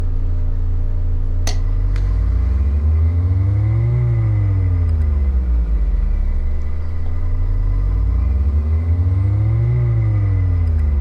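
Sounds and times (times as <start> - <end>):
heavy low drone: 1.2 - 11.0
sharp click: 1.5 - 2.1.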